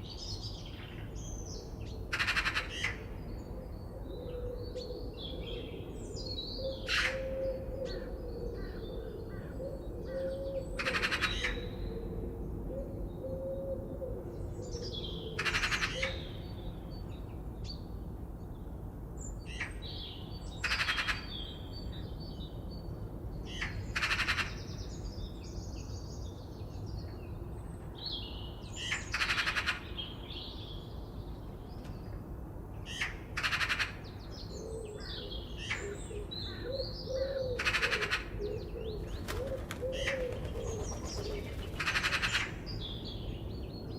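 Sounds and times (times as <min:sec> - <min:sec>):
low background noise: 0:00.0 - 0:43.9
low wavering coo: 0:03.4 - 0:06.0, 0:06.6 - 0:16.2, 0:36.0 - 0:41.6
small birds chirping: 0:38.4 - 0:43.9.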